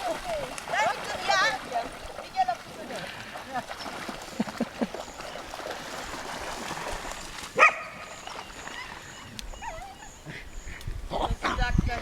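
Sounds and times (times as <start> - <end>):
dog barking: 7.6 - 8.0.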